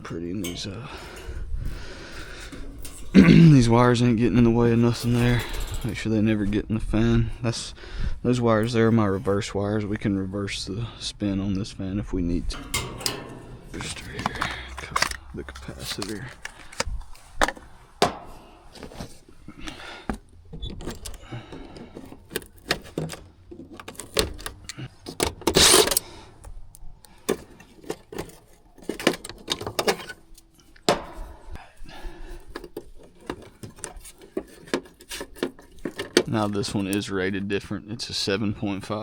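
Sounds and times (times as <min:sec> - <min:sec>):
metal tools clicking and rattling: 0:00.4 - 0:03.3, 0:04.9 - 0:06.0, 0:12.5 - 0:18.4, 0:20.8 - 0:26.0.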